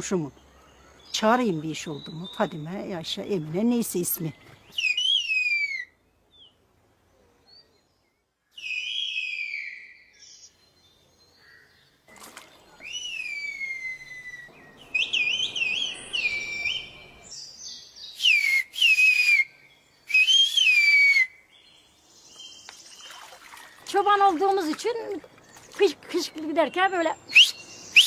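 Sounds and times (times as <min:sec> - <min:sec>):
whistled speech: 0:18.2 - 0:19.5, 0:20.1 - 0:21.3, 0:26.1 - 0:28.0.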